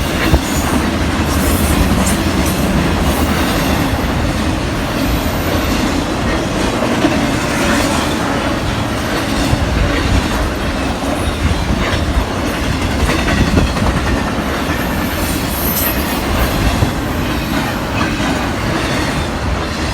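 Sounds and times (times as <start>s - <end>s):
train wheels rumbling on rail: 0.0s - 19.9s.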